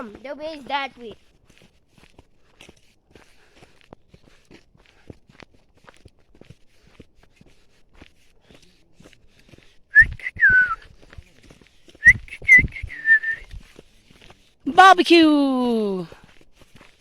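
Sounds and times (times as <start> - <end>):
footsteps on a trail: 0.0 - 17.0
person whistling: 9.9 - 10.9, 12.0 - 13.5.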